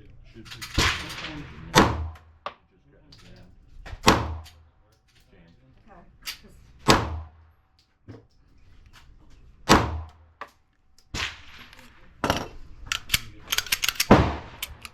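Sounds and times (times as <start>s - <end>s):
pistol shots: 0.4s - 2.6s, 3.2s - 4.7s, 6.2s - 7.6s, 9.6s - 14.9s
small cracks and clicks: 2.2s - 6.8s, 7.5s - 14.9s.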